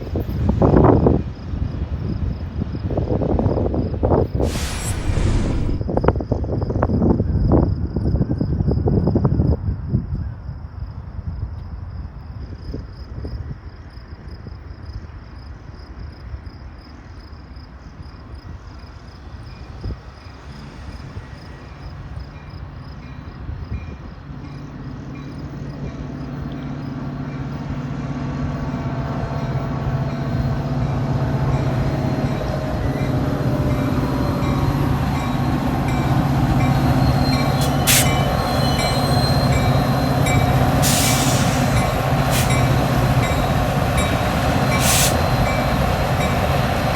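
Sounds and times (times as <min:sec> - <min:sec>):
diesel train engine hum: 0:04.4 - 0:05.9, 0:24.2 - 0:46.9
train wheel squeals: 0:18.9 - 0:46.9.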